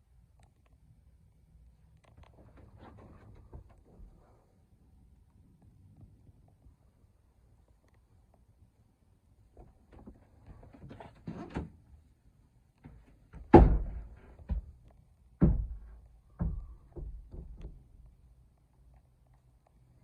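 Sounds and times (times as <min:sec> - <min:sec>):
knocks and thuds: 0:13.3 - 0:14.8, 0:15.4 - 0:17.8.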